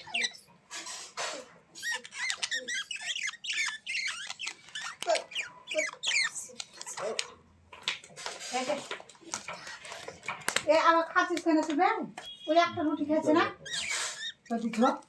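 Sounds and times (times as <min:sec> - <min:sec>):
birds squawking and chirping: 0:00.0 - 0:07.0, 0:12.4 - 0:15.0.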